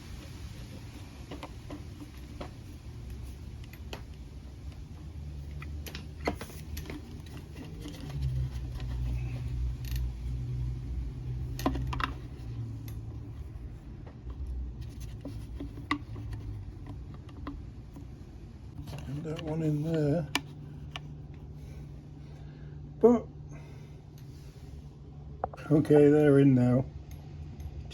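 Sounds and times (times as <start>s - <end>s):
steady low hum: 0.0s - 27.9s
plastic parts clicking and scraping: 5.5s - 13.3s, 14.1s - 18.2s, 18.8s - 21.5s.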